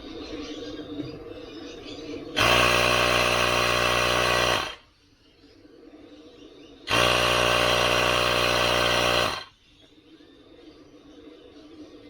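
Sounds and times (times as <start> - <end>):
electric air compressor running: 2.4 - 4.8, 6.9 - 9.5.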